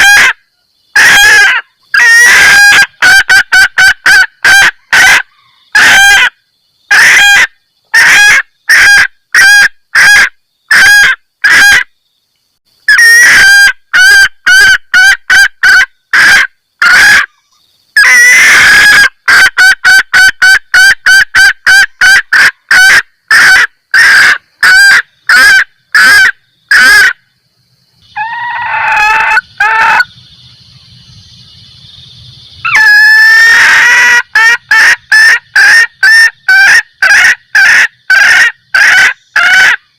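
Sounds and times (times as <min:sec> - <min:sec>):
junglefowl cackling: 0:00.0 - 0:11.9, 0:12.9 - 0:27.2, 0:28.0 - 0:30.7, 0:32.6 - 0:39.9
harsh junglefowl calls: 0:00.0 - 0:12.0, 0:12.9 - 0:27.4, 0:28.0 - 0:39.9.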